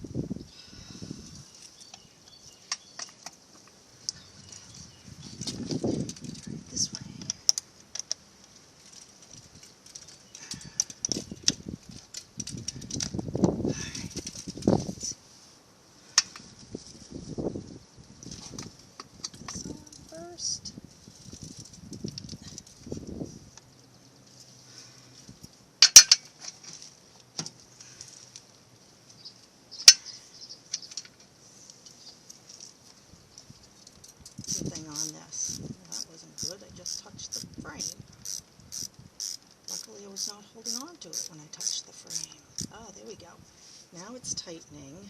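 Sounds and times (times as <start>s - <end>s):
hands handling battery and wrench: 25.8s - 26.4s, 33.9s - 37.0s.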